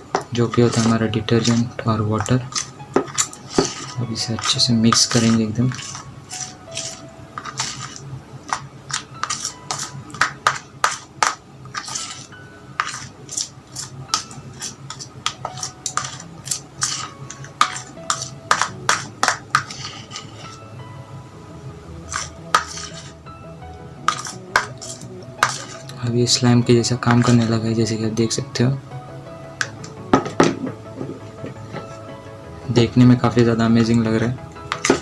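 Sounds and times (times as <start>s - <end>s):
utensil stirring slime in a bowl: 0.1s - 20.7s, 22.1s - 23.2s, 24.0s - 27.7s, 33.8s - 35.0s.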